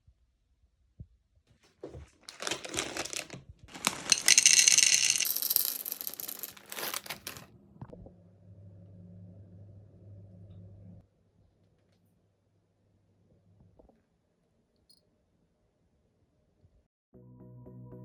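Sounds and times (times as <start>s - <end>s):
rustling and crinkling: 1.5s - 7.5s
faint low hum: 7.9s - 13.8s.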